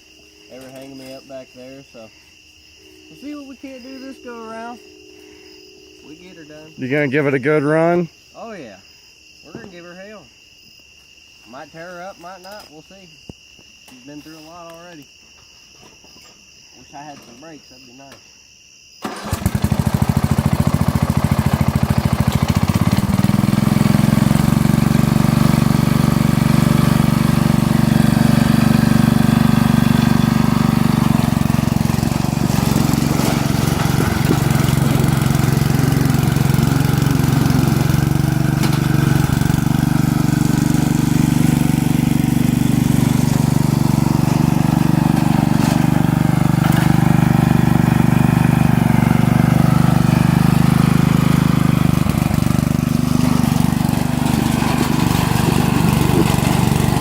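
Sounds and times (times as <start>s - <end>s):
riding lawn mower engine running: 2.9s - 8.1s, 19.0s - 57.0s.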